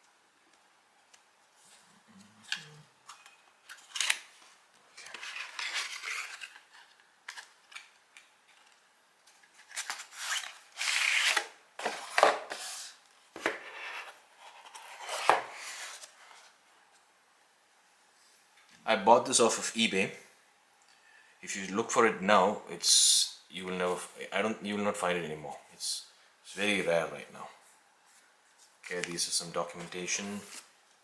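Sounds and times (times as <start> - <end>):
cardboard and paper rustling: 1.6 - 16.6, 28.1 - 30.7.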